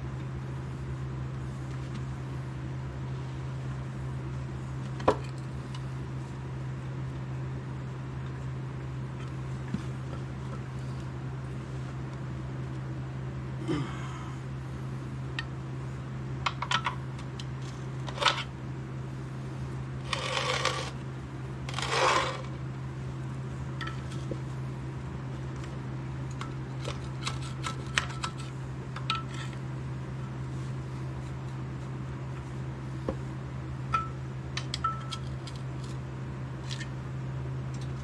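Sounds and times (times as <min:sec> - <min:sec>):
steady low hum: 0:00.0 - 0:38.0
short scraping sounds: 0:21.7 - 0:22.5.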